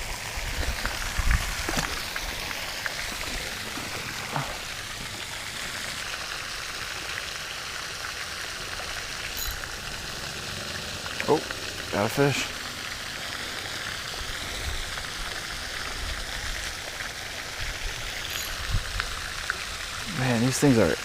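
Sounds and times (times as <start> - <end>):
outdoor hiss: 8.2 - 21.0.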